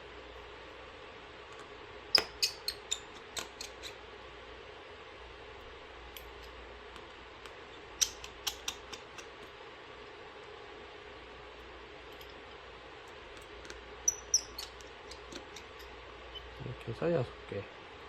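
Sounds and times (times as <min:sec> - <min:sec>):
clicks of tiny screws and screwdriver: 0:01.6 - 0:04.0, 0:06.1 - 0:09.5, 0:13.3 - 0:15.9.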